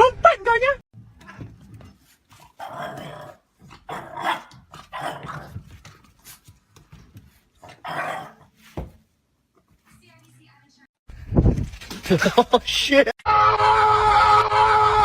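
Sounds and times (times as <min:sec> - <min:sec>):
dog barking roughly: 0:02.6 - 0:05.5, 0:07.6 - 0:08.4.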